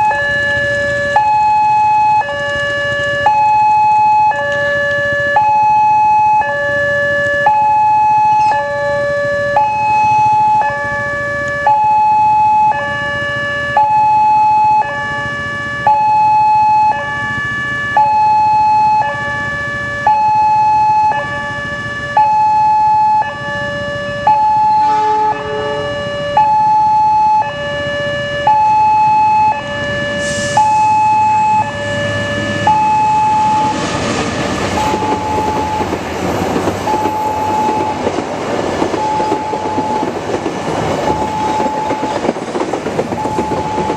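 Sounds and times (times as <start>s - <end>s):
train rumble: 0.0s - 15.9s, 29.6s - 43.9s.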